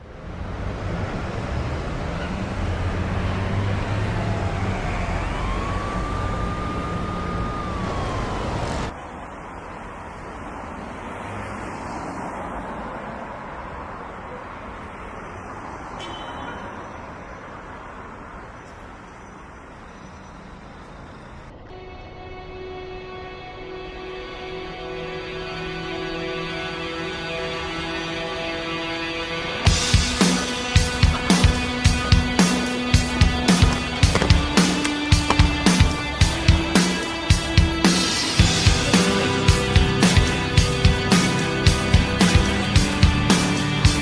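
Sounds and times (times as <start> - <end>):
street traffic noise: 0.0 - 44.0
siren-like tone: 2.1 - 8.9, 21.7 - 25.9.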